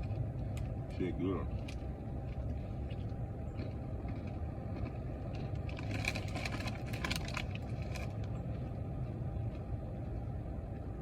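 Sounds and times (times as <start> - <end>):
steady low rumble: 0.0 - 11.0
popcorn being crunched: 4.1 - 8.2.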